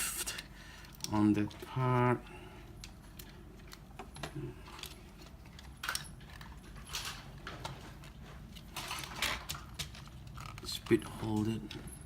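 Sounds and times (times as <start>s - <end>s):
plastic parts scraping: 2.9s - 12.0s
plastic parts clicking: 8.5s - 11.9s.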